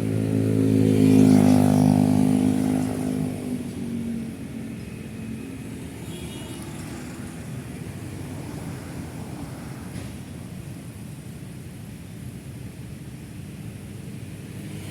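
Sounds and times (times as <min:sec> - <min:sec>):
passing car engine: 0:00.0 - 0:04.8
rumble of road traffic: 0:00.0 - 0:14.9.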